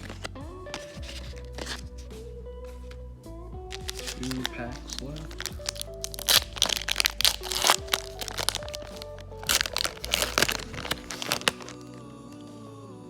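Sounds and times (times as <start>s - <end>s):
card pack wrapper crinkling and tearing: 0.0s - 1.8s, 3.7s - 11.8s
background music: 0.0s - 13.0s.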